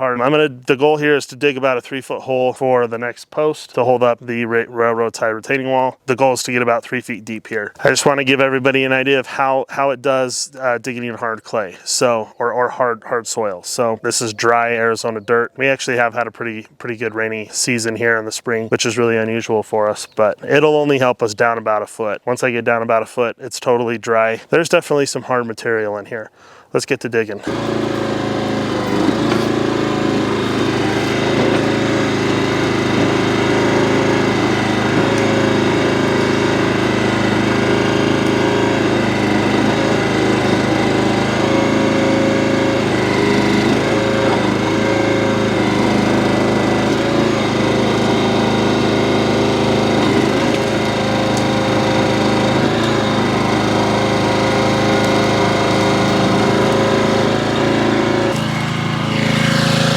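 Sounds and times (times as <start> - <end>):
bucket digging into dry soil: 27.4 - 59.9
small gasoline engine running: 27.4 - 59.9.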